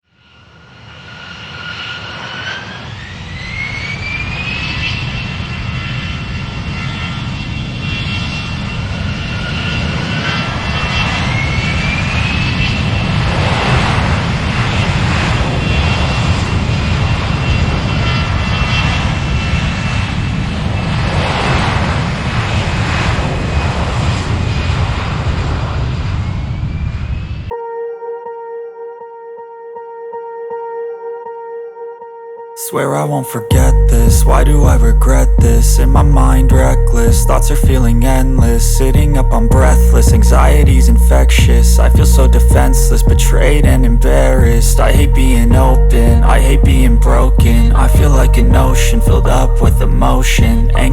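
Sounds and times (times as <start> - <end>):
jet engine whine: 0.0 - 27.6, 32.6 - 50.9
jet engine low rumble: 0.1 - 27.6, 33.5 - 50.9.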